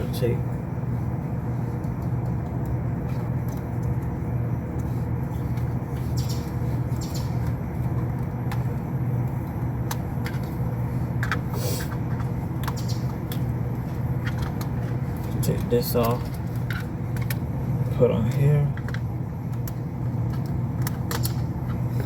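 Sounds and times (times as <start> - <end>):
hvac equipment humming: 0.0 - 22.0
clicks and rattles of parts: 7.1 - 17.4, 18.1 - 22.0.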